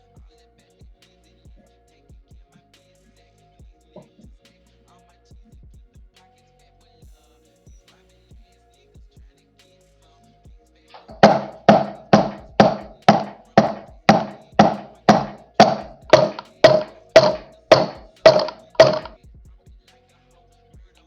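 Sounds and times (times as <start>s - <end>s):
hammer striking metal: 11.0s - 19.2s.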